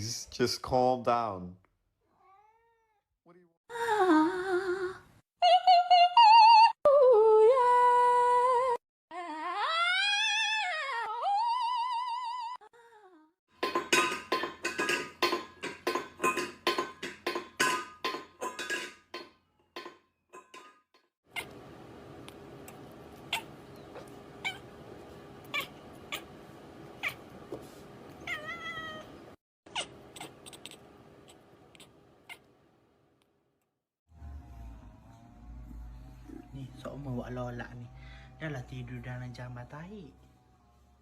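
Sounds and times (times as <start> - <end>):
cat meowing: 2.1 - 3.0, 23.3 - 24.7, 25.5 - 26.3, 28.2 - 29.2.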